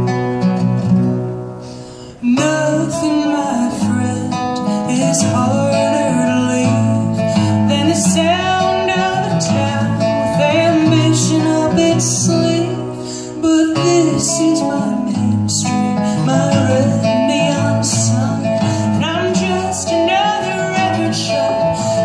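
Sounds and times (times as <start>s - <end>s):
strummed acoustic guitar: 0.0s - 22.0s.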